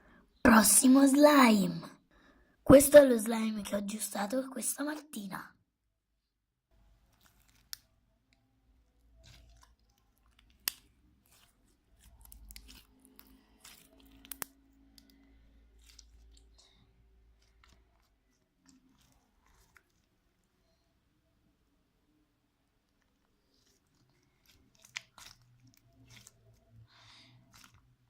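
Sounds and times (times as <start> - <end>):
slime squished by hand: 7.1 - 20.3, 23.3 - 28.0.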